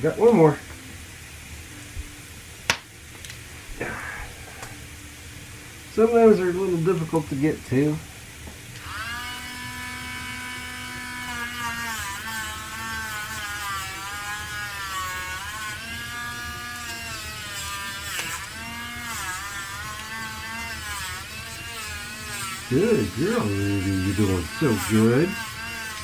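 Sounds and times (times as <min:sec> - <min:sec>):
nail grinder high whine: 0:08.8 - 0:26.0.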